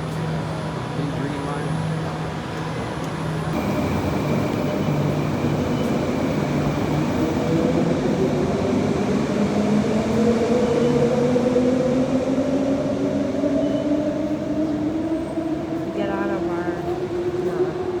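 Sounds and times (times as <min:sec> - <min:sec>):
electric train rumbling: 0:00.0 - 0:18.0
train motor whine rising in pitch: 0:03.6 - 0:09.6.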